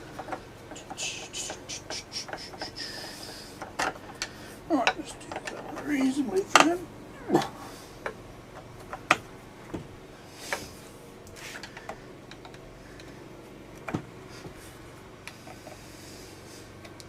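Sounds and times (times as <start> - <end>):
hand tools clicking and knocking: 0.0 - 6.8.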